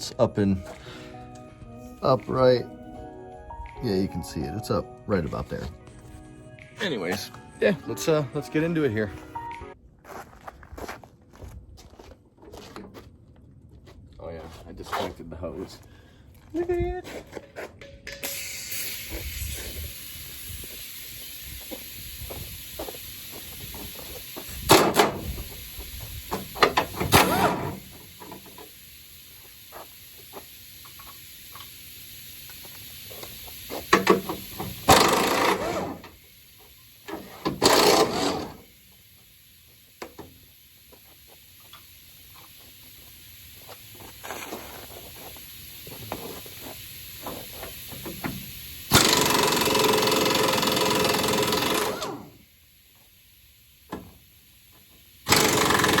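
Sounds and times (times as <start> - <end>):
impact wrench rattling: 26.4 - 28.7, 33.2 - 36.1, 37.1 - 38.7, 47.9 - 52.3, 55.3 - 56.0.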